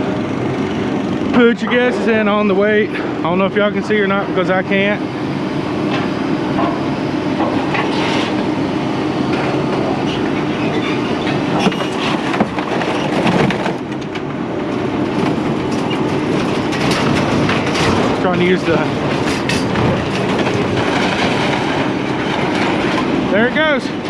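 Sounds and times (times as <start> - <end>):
heavy machinery running: 0.0 - 24.0
metal clanking and scraping: 5.9 - 8.5, 9.3 - 14.2, 15.1 - 24.0.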